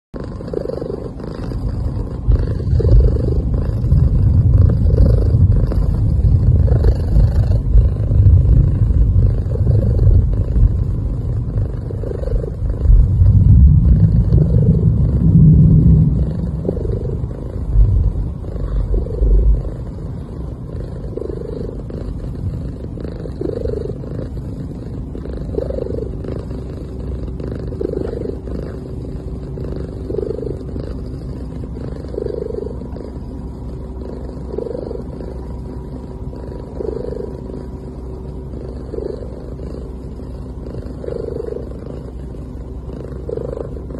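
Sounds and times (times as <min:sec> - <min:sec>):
cat purring: 0:00.1 - 0:43.9
cat breathing: 0:00.2 - 0:43.9.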